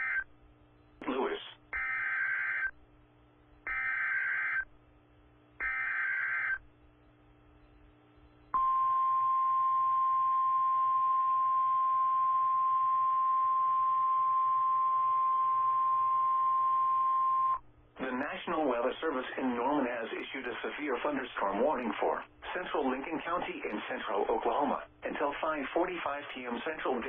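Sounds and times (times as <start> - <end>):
faint low hum: 0.0 - 27.0
steady single-pitch alert tone: 8.6 - 17.6.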